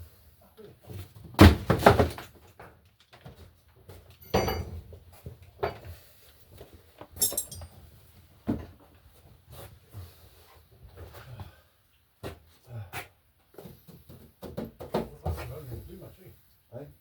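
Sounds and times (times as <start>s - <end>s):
hard objects clanking: 7.2s - 7.7s.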